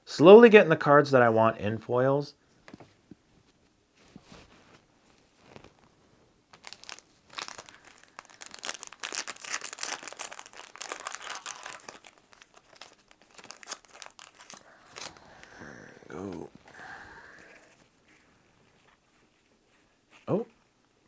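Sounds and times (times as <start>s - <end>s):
wrapper crinkling and tearing: 6.5s - 15.2s.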